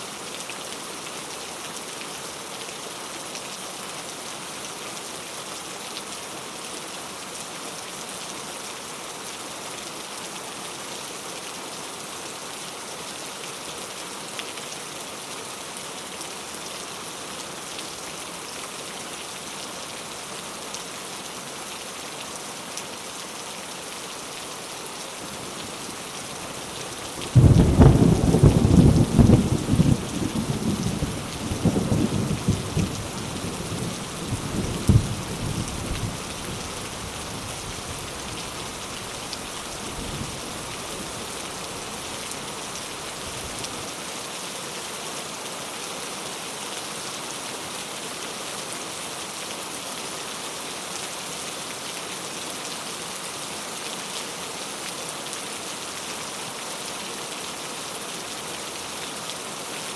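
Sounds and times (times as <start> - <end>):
steady rain: 0.0 - 59.9
thunder rumbling: 27.0 - 33.4.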